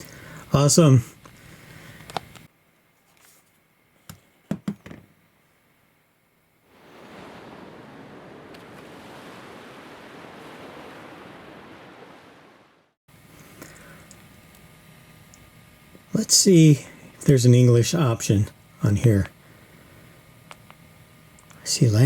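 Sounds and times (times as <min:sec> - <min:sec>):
steady hiss: 0:06.7 - 0:12.0.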